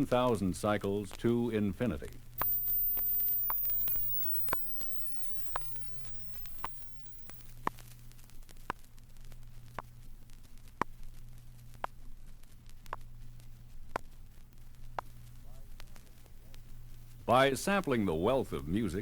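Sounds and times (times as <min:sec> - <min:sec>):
vinyl record surface hiss: 0:00.0 - 0:19.0
record click: 0:02.4 - 0:07.5.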